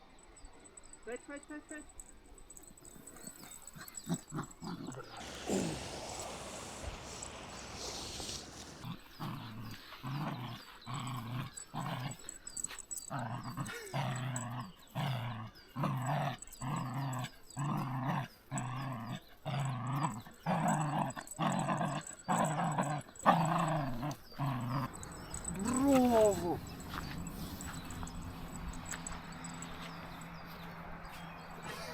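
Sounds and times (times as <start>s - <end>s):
dog vocalising rhythmically: 8.6s - 31.8s.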